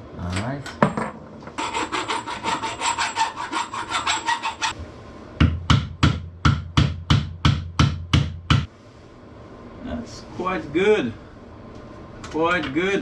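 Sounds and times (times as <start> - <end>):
metallic rasping strokes: 1.6 - 4.8
sharp knocks: 5.4 - 8.7.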